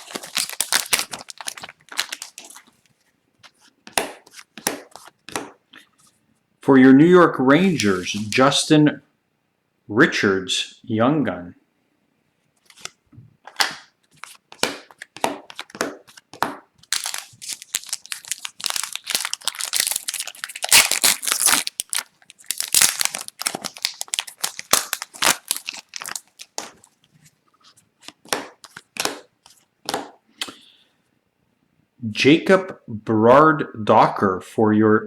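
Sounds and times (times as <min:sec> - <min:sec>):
foil wrapper crinkling and tearing: 0:00.0 - 0:02.8, 0:16.8 - 0:26.9
cards rustling and tapping: 0:00.0 - 0:06.1, 0:07.7 - 0:08.4, 0:12.6 - 0:30.2.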